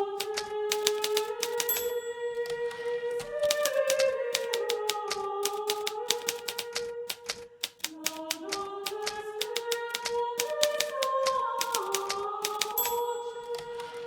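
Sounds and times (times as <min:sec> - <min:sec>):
typewriter keys clacking: 0:00.0 - 0:02.6, 0:03.4 - 0:14.0.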